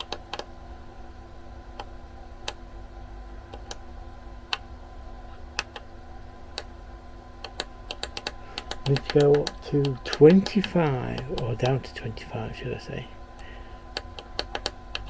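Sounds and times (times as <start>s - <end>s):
faint steady hum: 0.0s - 15.0s
push buttons clicking: 7.4s - 12.4s, 13.9s - 15.0s.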